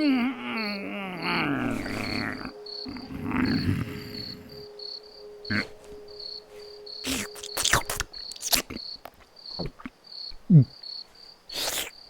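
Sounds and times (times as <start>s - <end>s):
low steady tone: 0.0s - 8.8s
cricket chirping: 0.0s - 12.0s.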